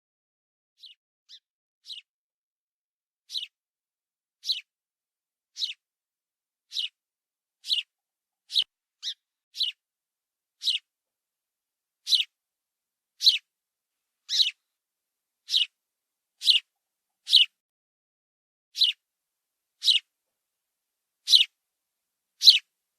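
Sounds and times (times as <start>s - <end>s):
sparrow chirping: 0.8s - 2.1s, 3.2s - 3.6s, 4.4s - 4.7s, 5.5s - 5.8s, 6.6s - 7.0s, 7.6s - 9.8s, 10.6s - 10.9s, 12.0s - 12.4s, 13.2s - 13.5s, 14.2s - 14.7s, 15.4s - 15.8s, 16.4s - 17.6s, 18.8s - 19.0s, 19.8s - 20.1s, 21.2s - 21.6s, 22.4s - 22.7s.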